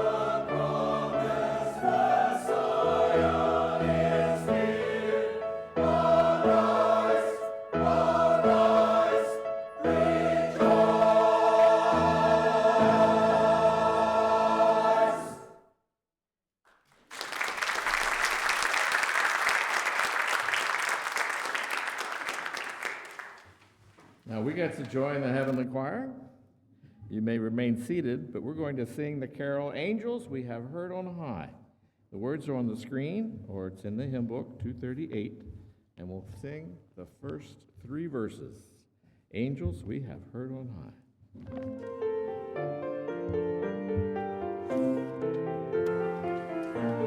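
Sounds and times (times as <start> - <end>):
church choir singing: 0.0 - 15.7, 41.5 - 47.0
congregation applauding: 9.9 - 14.0, 16.7 - 23.6.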